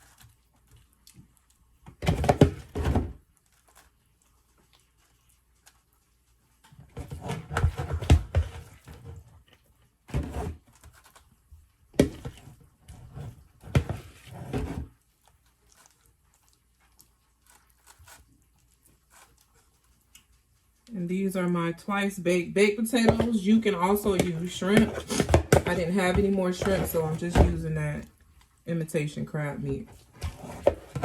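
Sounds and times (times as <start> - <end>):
spoon scraping a bowl: 23.0 - 27.6.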